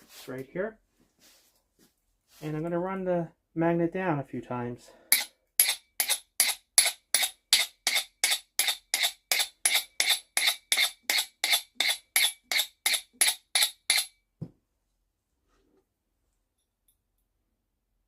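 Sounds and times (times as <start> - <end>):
magnet scraping on hammer head: 5.1 - 14.2.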